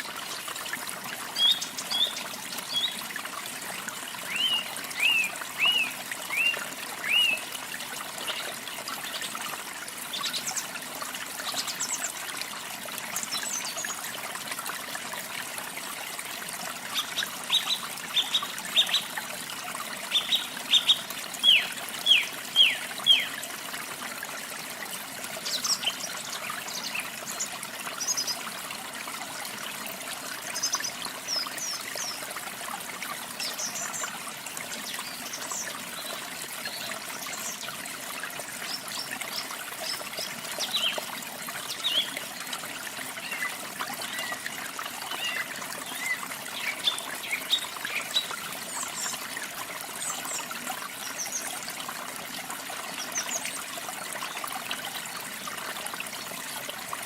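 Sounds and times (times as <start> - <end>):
water trickling and splashing: 0.0 - 57.0
birds singing: 1.4 - 3.0, 4.3 - 7.5, 20.1 - 23.4, 41.7 - 42.2.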